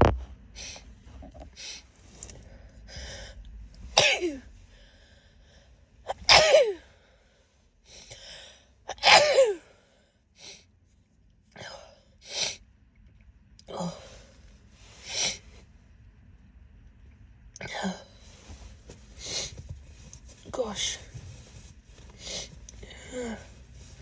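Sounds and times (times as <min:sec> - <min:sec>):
woman sneezing: 0:04.0 - 0:04.4, 0:06.1 - 0:06.8, 0:08.9 - 0:09.7.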